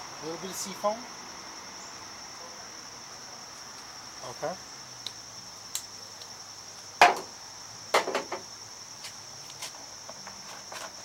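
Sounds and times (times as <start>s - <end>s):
high insect chirring: 0.0s - 11.0s
bottle and fuel tank knocks: 7.0s - 7.3s, 7.9s - 8.4s.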